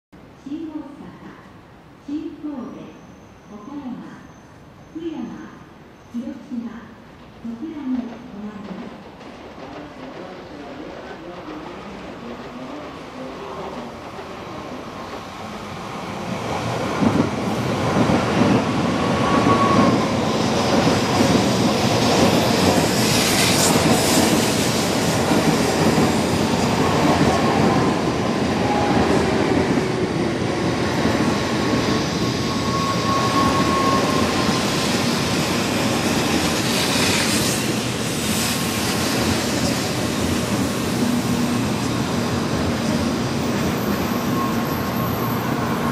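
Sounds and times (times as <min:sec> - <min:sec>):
train rumble: 0:06.7 - 0:45.9
high squealing tones: 0:18.9 - 0:20.6, 0:32.0 - 0:35.2, 0:43.6 - 0:45.9.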